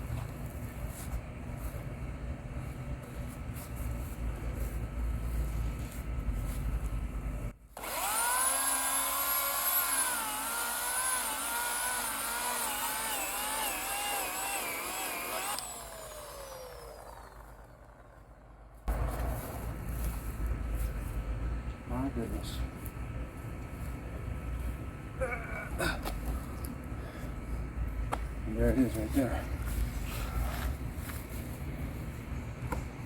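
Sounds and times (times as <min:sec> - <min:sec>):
electric chainsaw cutting wood: 0:07.8 - 0:18.5.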